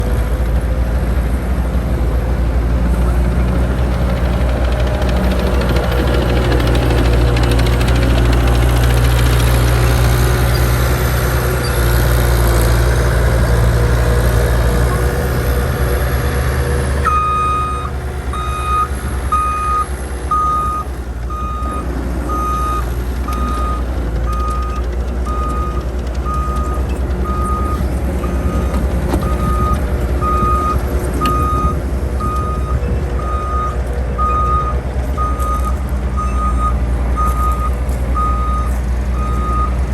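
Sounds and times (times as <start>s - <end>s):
diesel engine running under load: 0.0s - 39.9s
backup alarm beeping: 17.0s - 39.8s.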